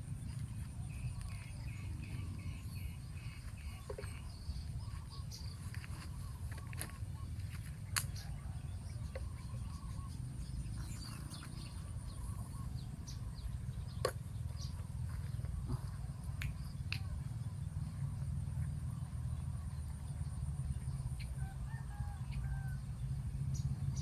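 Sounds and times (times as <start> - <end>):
bird chirps: 0.0 - 18.0
wind rumble on microphone: 0.0 - 24.0.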